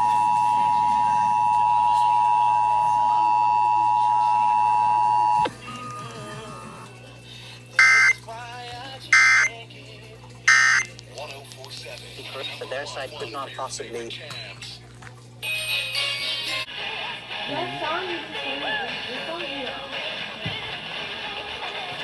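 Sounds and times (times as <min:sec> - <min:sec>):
digital data tone bursts: 0:07.8 - 0:08.2, 0:09.2 - 0:09.5, 0:10.5 - 0:10.9
two-tone attention signal: 0:07.8 - 0:08.2, 0:09.1 - 0:09.5, 0:10.5 - 0:10.9.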